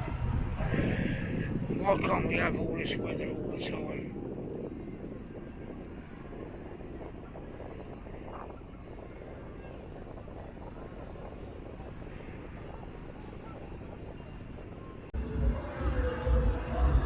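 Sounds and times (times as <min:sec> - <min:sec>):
low outdoor rumble: 0:00.0 - 0:17.0.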